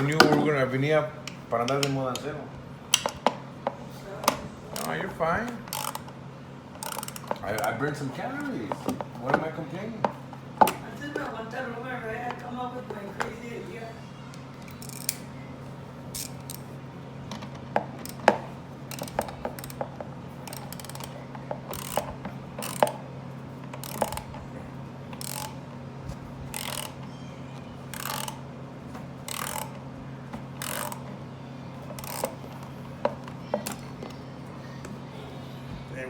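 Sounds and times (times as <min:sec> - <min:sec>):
ratchet wrench clicking: 0:04.8 - 0:05.0, 0:05.7 - 0:06.1, 0:06.8 - 0:07.7, 0:14.7 - 0:15.2, 0:16.2 - 0:16.7, 0:18.0 - 0:23.0, 0:23.7 - 0:24.3, 0:25.1 - 0:25.6, 0:26.5 - 0:27.0, 0:27.9 - 0:28.4, 0:29.2 - 0:29.8, 0:30.6 - 0:31.1, 0:31.9 - 0:32.4.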